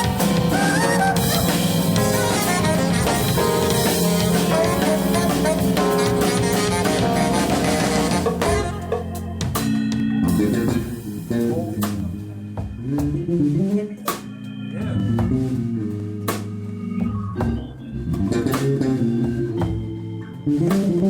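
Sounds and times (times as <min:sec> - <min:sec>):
sharp drum accents: 0:00.0 - 0:12.2
bass guitar: 0:00.0 - 0:21.0
live band playing instrumental: 0:00.0 - 0:21.0.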